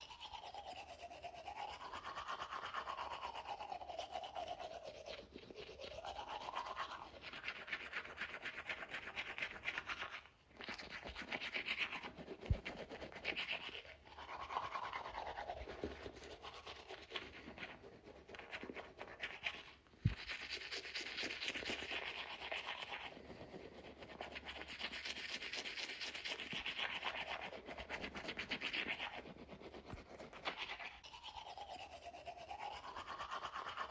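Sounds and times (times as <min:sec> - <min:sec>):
toothbrush scrubbing teeth: 0:00.0 - 0:33.9.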